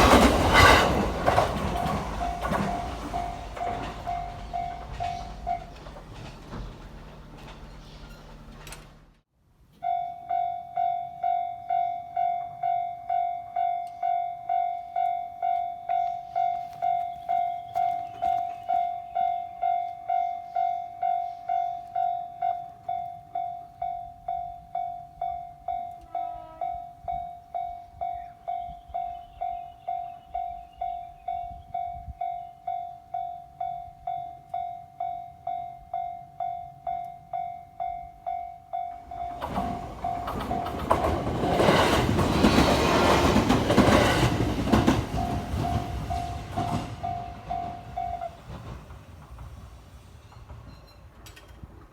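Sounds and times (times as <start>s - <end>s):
train running past: 0.0s - 9.2s, 9.8s - 51.9s
level crossing bell ringing: 1.6s - 5.8s, 9.8s - 41.6s, 45.1s - 48.4s.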